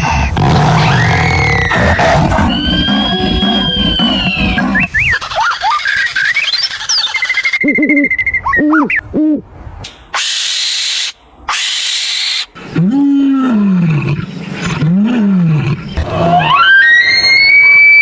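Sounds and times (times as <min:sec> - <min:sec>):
long low animal calls: 0:00.0 - 0:09.5
short arched hooting calls: 0:00.5 - 0:09.1, 0:10.1 - 0:12.6.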